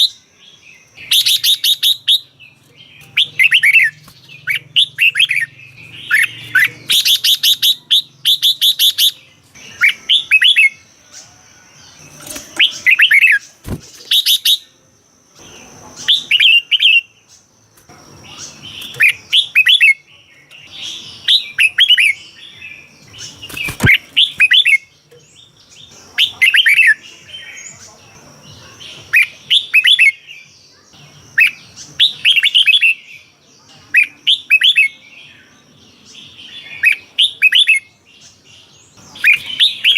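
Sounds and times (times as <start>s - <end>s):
bird singing warbled phrases: 0.0s - 39.9s.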